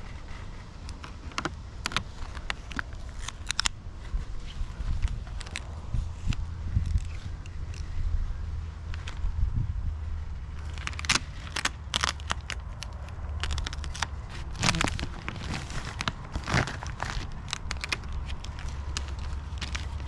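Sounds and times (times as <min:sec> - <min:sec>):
plastic sheeting crinkling: 0:00.0 - 0:05.7, 0:10.0 - 0:20.0.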